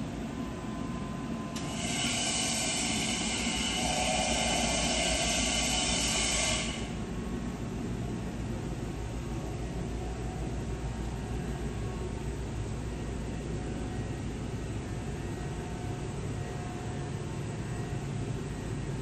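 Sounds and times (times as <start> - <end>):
steady machine hum: 0.0 - 19.0
loud gas hiss: 1.7 - 7.0.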